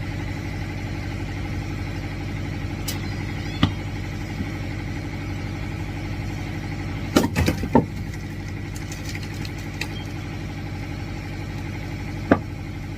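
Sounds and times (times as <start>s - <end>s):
small engine running: 0.0s - 12.9s
firewood splitting cracks: 7.1s - 10.2s.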